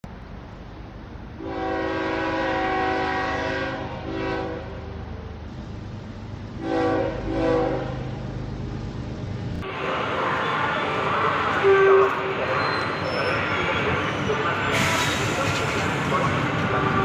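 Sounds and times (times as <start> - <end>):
train rumbling: 0.0 - 17.0
train air horn blasts: 1.4 - 5.0, 6.6 - 8.1, 10.2 - 12.3, 16.6 - 17.0.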